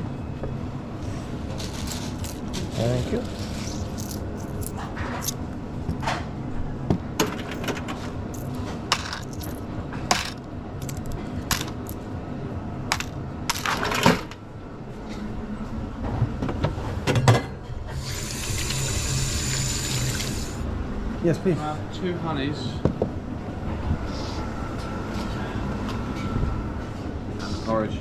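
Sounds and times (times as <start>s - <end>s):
hard objects clinking and knocking: 7.2s - 12.0s, 12.9s - 14.4s
coffee machine hissing: 17.9s - 20.6s.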